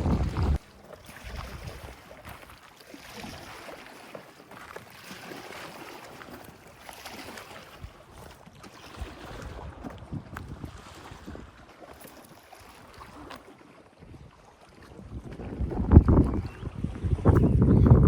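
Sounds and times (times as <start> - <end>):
wind buffeting microphone: 0.0 - 2.0, 9.0 - 11.6, 14.0 - 18.0
hiss of wind and water: 0.0 - 4.2.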